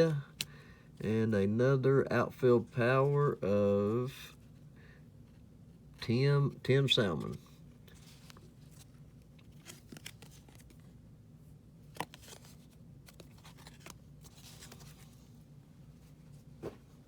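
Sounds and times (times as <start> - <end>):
low steady hum: 0.0 - 17.0
trading cards clicking and sliding: 7.2 - 10.8, 11.9 - 15.2.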